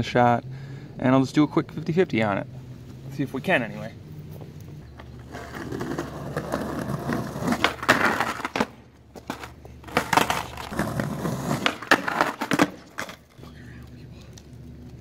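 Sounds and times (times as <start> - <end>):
skateboard trucks grinding ledge: 4.8 - 13.4
skateboard landing clacks: 5.8 - 13.3.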